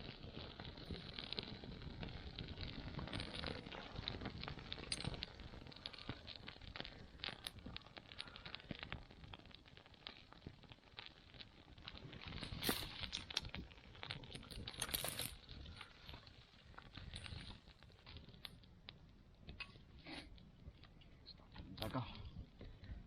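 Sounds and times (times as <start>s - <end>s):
fire crackling: 0.0s - 23.0s.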